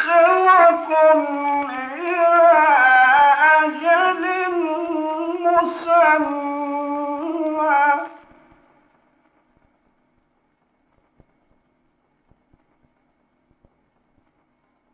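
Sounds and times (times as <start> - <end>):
man's high voice chanting: 0.0 - 8.2.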